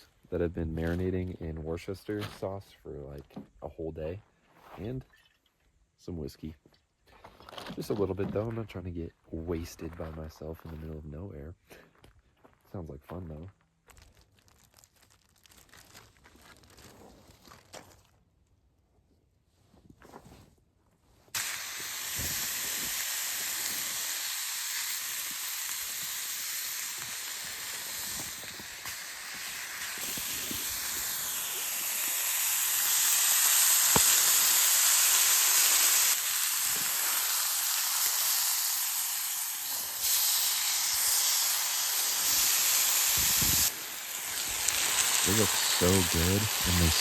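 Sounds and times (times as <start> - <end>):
steak sizzling in a hot pan: 21.4 - 47.0.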